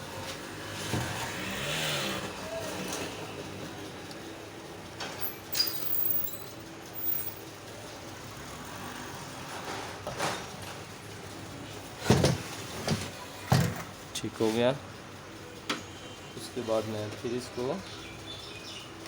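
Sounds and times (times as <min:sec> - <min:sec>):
knocks and clicks of handling tools: 0:12.0 - 0:14.0.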